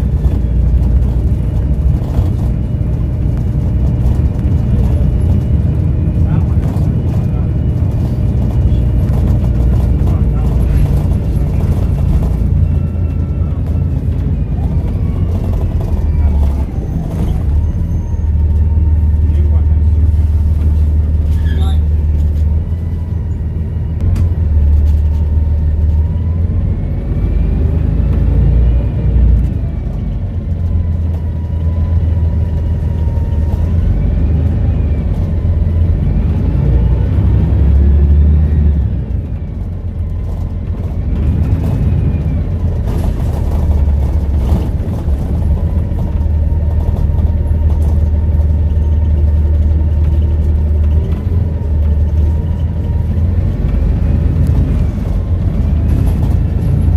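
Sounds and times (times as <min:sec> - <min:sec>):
bus engine rumbling: 0:00.0 - 0:56.9.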